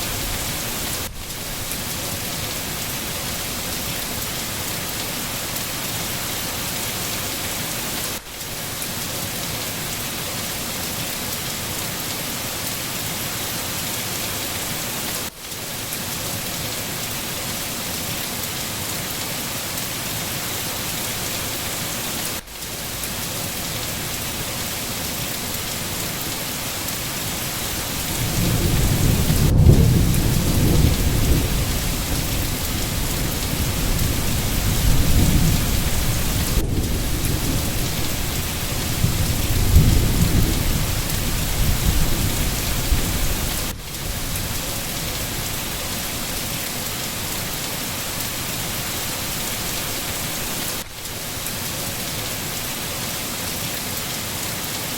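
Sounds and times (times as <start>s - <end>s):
steady rain: 0.0s - 54.9s
rumble of thunder: 27.8s - 44.6s.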